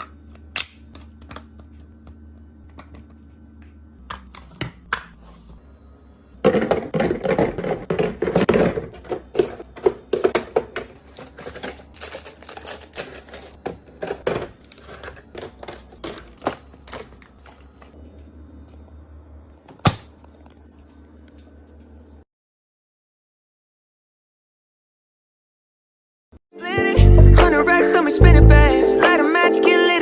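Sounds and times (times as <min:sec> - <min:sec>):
containers clattering and tapping: 0:06.4 - 0:12.2.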